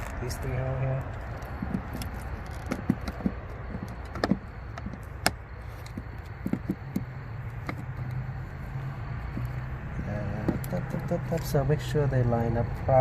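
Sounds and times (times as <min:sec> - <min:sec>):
low background rumble: 0:00.0 - 0:13.0
plug clicks and knocks: 0:01.5 - 0:08.1.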